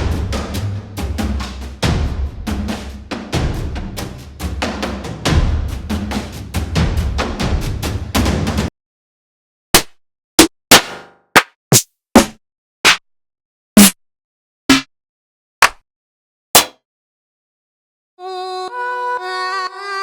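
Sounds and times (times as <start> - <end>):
trap drum hits: 0.0 - 8.7.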